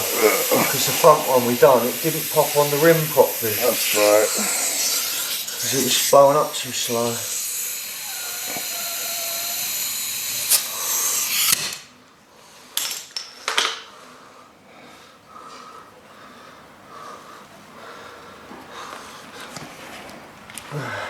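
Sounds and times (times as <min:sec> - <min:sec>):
compressed air hissing into tyre: 0:00.0 - 0:11.8.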